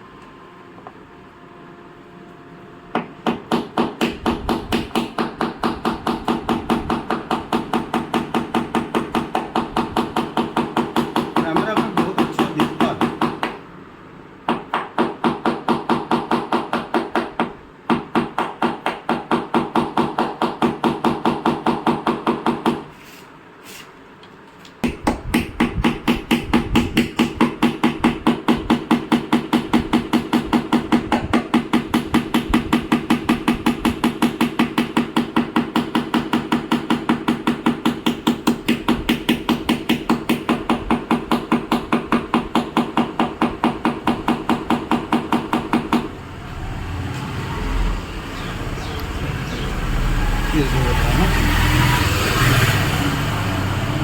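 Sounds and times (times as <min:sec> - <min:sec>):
hammer tapping on sheet metal: 0:02.9 - 0:13.6, 0:14.5 - 0:22.9, 0:24.8 - 0:46.1.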